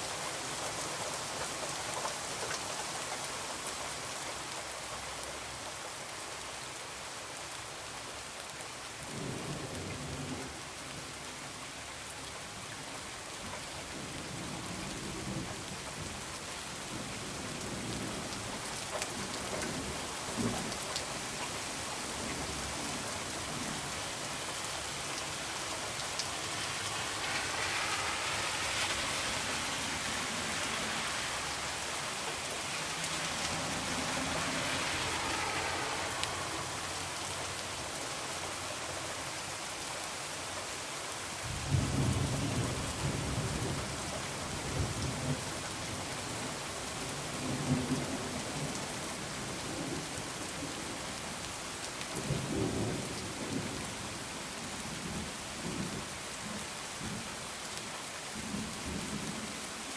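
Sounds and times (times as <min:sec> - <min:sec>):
heavy rain falling: 0:00.0 - 0:59.9
low rumble of thunder: 0:41.4 - 0:46.1.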